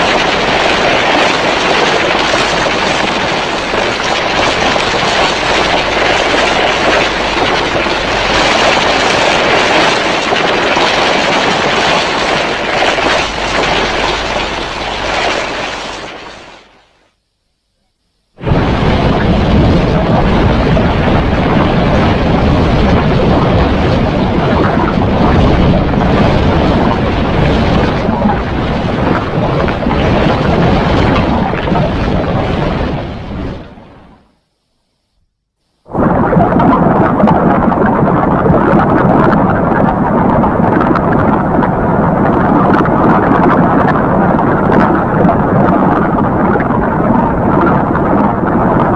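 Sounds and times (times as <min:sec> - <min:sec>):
harsh rushing monster noise: 0:00.0 - 0:16.8.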